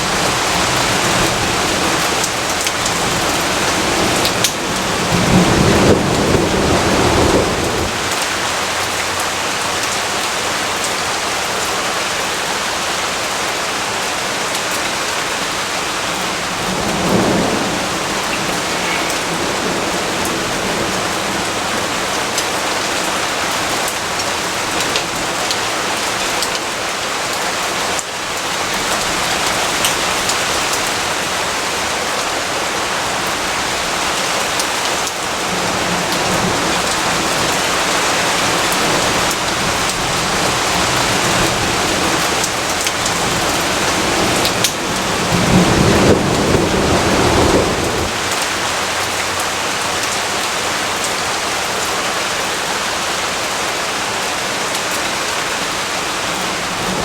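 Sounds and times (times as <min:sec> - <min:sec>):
thunder rumbling: 0:00.0 - 0:08.9, 0:15.6 - 0:25.4, 0:35.1 - 0:49.1
heavy rainfall: 0:00.0 - 0:57.0.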